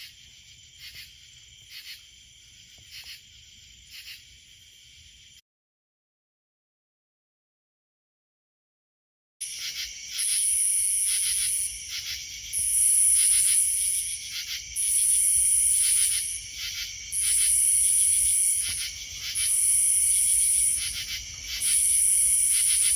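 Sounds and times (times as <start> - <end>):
crickets chirping: 0.0 - 5.4, 9.4 - 22.9
katydid buzzing call: 9.4 - 22.9.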